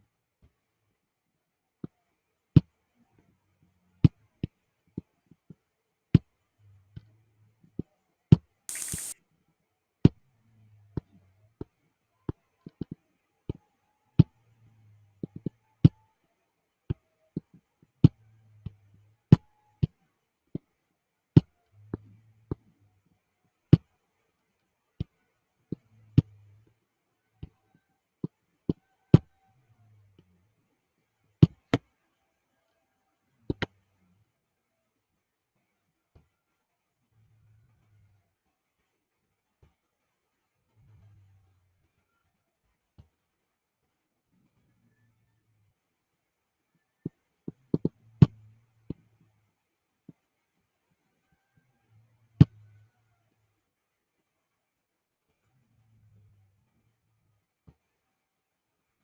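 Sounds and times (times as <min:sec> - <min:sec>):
short hiss: 0:08.7 - 0:09.2.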